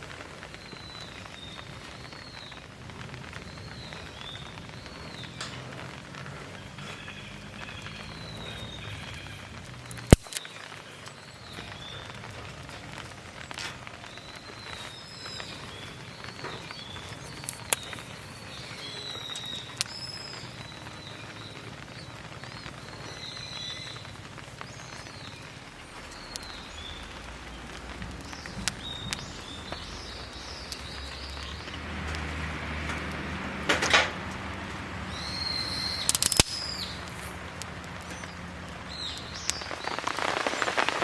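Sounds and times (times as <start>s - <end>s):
birds chirping: 0.0s - 41.0s
rain hissing: 0.0s - 41.0s
sharp clicks: 7.4s - 14.0s, 35.6s - 41.0s.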